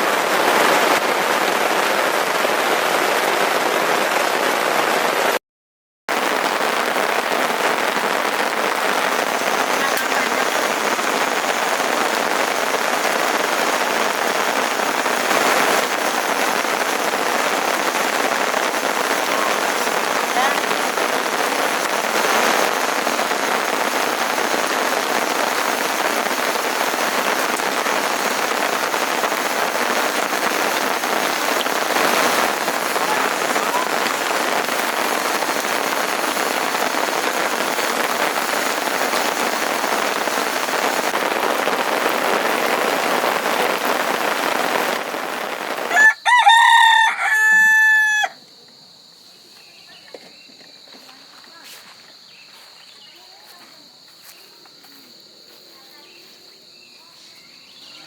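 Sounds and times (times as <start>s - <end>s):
steady rain falling: 0.0s - 5.4s, 6.1s - 48.4s
rooster crowing: 45.9s - 48.4s.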